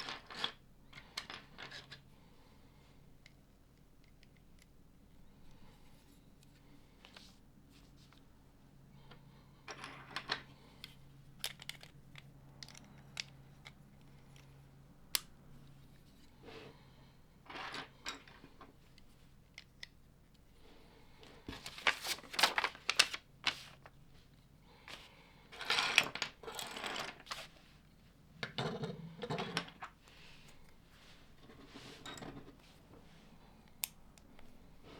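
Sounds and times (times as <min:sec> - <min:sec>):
plastic pieces clicking and clattering: 0:11.4 - 0:13.8.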